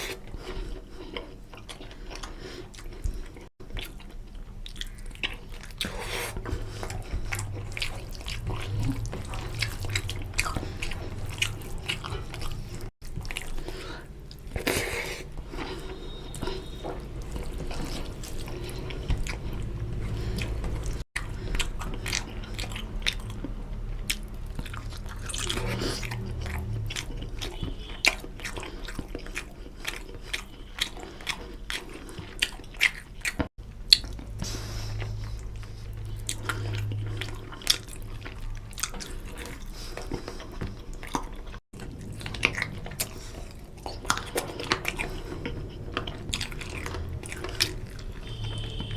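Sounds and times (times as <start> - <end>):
person chewing with mouth smacks: 0.0 - 48.9
low hum: 5.9 - 12.9.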